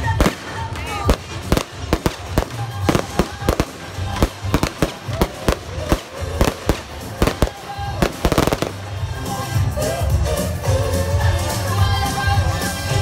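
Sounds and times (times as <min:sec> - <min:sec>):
fireworks bursting: 0:00.0 - 0:09.9
music soundtrack: 0:00.0 - 0:13.0.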